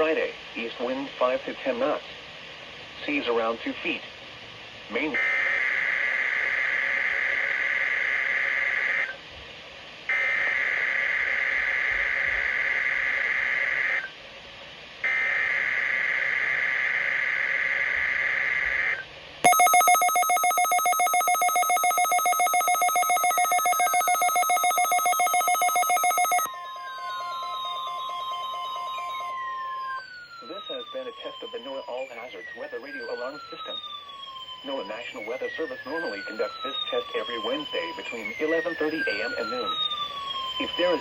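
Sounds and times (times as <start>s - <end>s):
buzzy two-tone digital chirps: 19.5s - 26.5s
steady electronic tone: 19.5s - 29.3s
pulsing electronic alert alarm: 19.5s - 30.3s.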